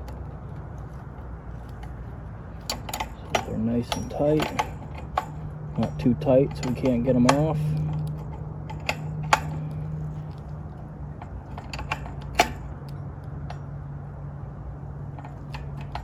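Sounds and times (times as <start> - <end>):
steady low hum: 0.0 - 16.0
wrench clicking on metal nut: 2.6 - 10.4.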